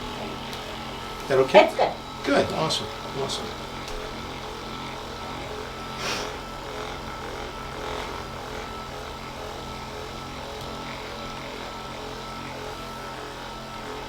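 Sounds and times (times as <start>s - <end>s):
massage gun motor hum: 0.0s - 14.0s
short hiss: 6.0s - 6.3s.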